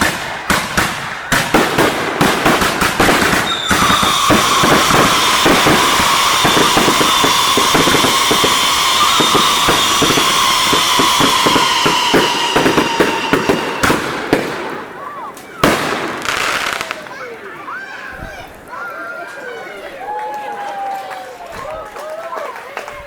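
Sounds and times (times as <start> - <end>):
firecracker bangs crackling: 0.0 - 17.4
firework whistle falling in pitch: 3.2 - 14.1.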